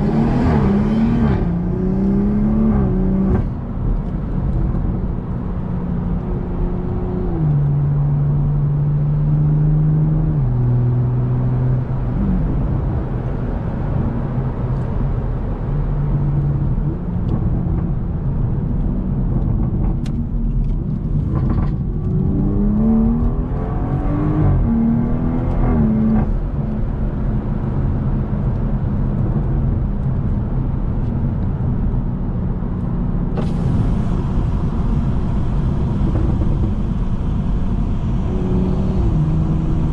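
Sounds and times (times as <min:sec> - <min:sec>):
car engine running: 0:32.7 - 0:39.9.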